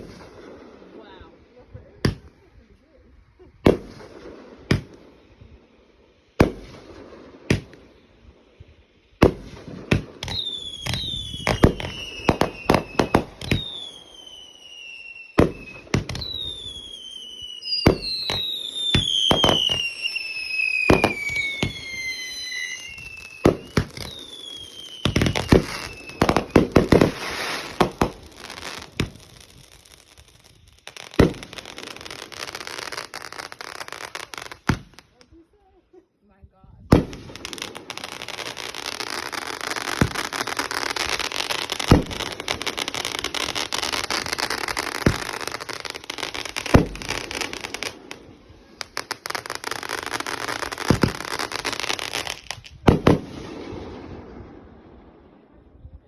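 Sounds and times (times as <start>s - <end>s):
fireworks banging: 0.0s - 0.8s, 2.0s - 2.5s, 3.6s - 5.1s, 6.4s - 7.9s, 9.2s - 35.4s, 36.8s - 55.2s
firework crackling: 0.0s - 2.6s, 3.7s - 5.2s, 6.3s - 35.6s, 36.9s - 55.4s
firework whistles falling in pitch: 9.2s - 35.0s, 36.9s - 48.2s, 48.8s - 53.4s.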